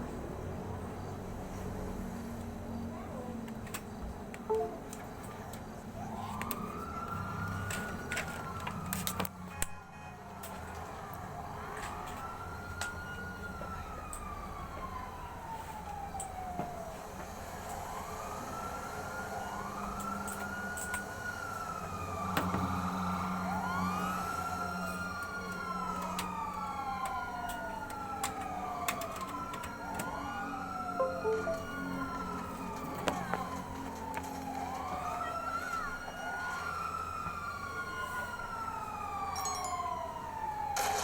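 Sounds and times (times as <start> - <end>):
siren-like wailing tones: 29.4 - 37.9.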